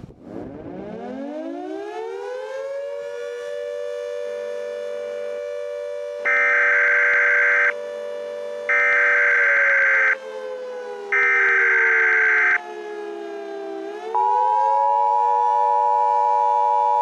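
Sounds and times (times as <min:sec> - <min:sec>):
civil defense siren: 0:00.2 - 0:17.0
harsh buzzing data bursts: 0:06.3 - 0:07.7, 0:08.7 - 0:10.2.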